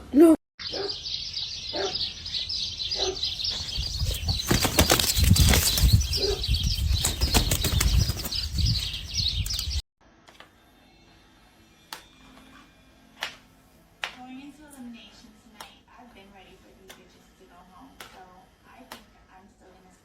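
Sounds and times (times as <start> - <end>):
small birds chirping: 0.6 - 9.8
wing flapping: 3.6 - 9.8.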